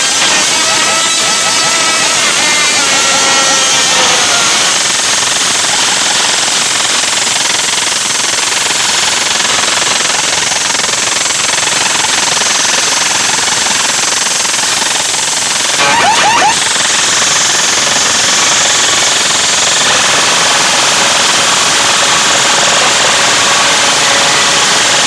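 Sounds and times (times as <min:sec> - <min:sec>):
whistle-like glides: 0:10.9 - 0:19.9
distorted loud sound system: 0:15.5 - 0:25.0.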